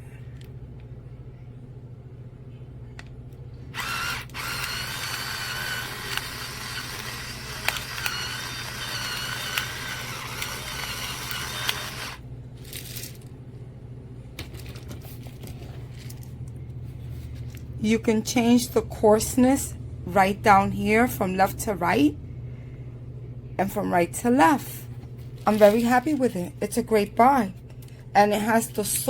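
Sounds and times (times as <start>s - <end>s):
electric pepper grinder motor whining: 3.8s - 12.2s.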